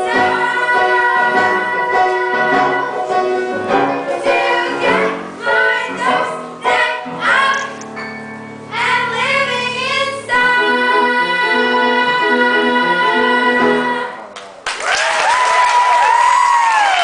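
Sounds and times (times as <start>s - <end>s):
children singing: 0.0s - 7.8s, 8.7s - 14.2s.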